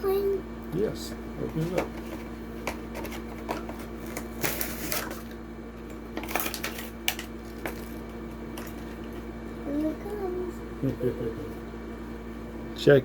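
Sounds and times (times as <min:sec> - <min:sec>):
steady low hum: 0:00.0 - 0:13.0
plastic packaging crackling and snapping: 0:02.9 - 0:05.4, 0:06.2 - 0:08.9.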